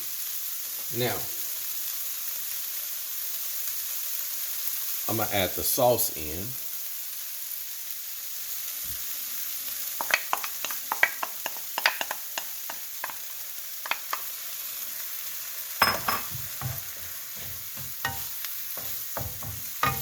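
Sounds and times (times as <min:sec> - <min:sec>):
vegetables sizzling in a skillet: 0:00.0 - 0:20.0
utensil scraping and tapping pan: 0:10.0 - 0:13.2, 0:15.8 - 0:20.0.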